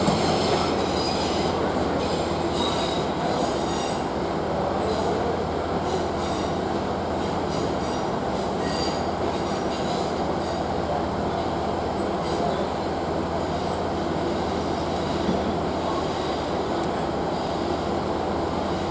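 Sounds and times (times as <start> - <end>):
train rumbling: 0.0 - 18.9
faint wheel squeals: 7.5 - 10.6.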